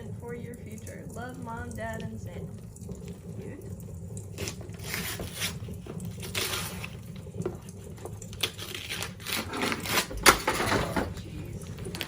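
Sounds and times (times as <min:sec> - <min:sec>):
wrapping paper rustling and tearing: 0:04.4 - 0:07.0, 0:08.3 - 0:10.4.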